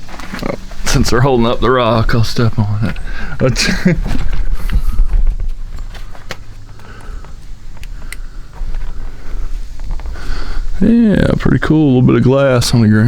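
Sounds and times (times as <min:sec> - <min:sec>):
footsteps on rock and dry leaves: 0:00.0 - 0:11.4
sharp clicks: 0:05.5 - 0:08.4.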